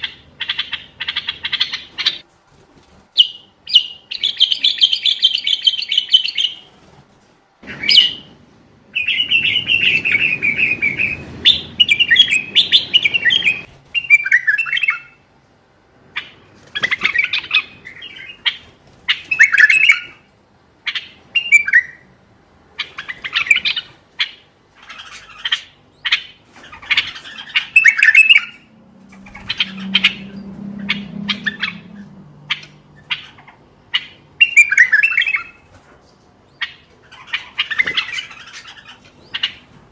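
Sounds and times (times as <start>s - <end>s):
bulbul chattering song: 22.8s - 35.6s.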